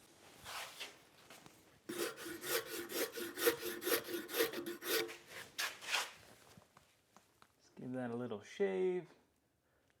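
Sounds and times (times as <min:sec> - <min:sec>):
hand tool scraping wood: 0:01.9 - 0:06.2.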